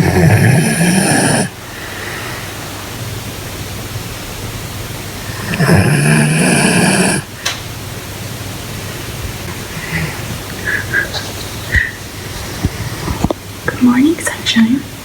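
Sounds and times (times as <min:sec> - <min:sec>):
dog snoring: 0:00.0 - 0:02.2, 0:05.2 - 0:07.4, 0:09.6 - 0:13.3
background hiss: 0:00.0 - 0:15.0.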